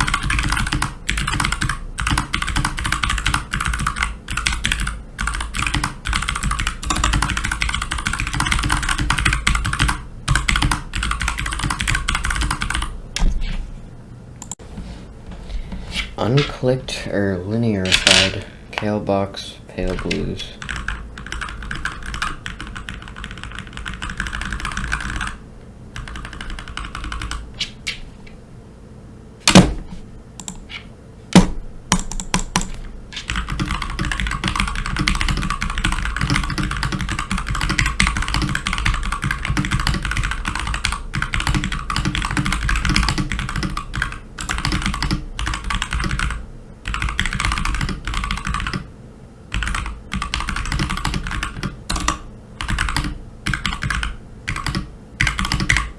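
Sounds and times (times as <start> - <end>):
mechanical keyboard typing: 0.0 - 12.9, 19.8 - 25.4, 26.0 - 27.4, 31.9 - 48.9, 49.5 - 55.9
loud knocks: 31.3 - 31.7.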